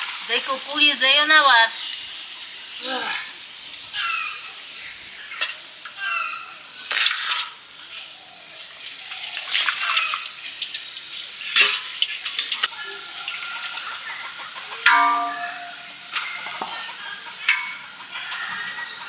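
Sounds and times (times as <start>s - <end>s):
water splashing in a basin: 6.8s - 16.8s
metal vessels clanking: 9.4s - 13.8s, 14.6s - 18.6s.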